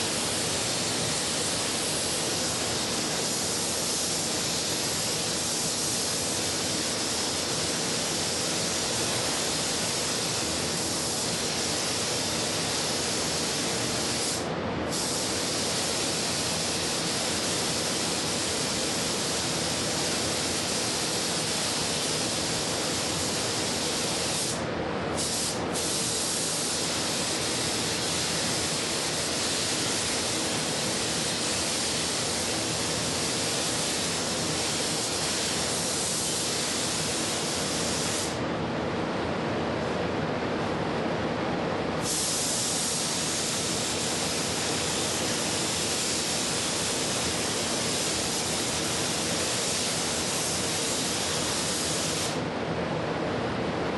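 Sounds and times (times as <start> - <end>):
spray gun hissing: 0.0 - 38.4, 42.0 - 52.4.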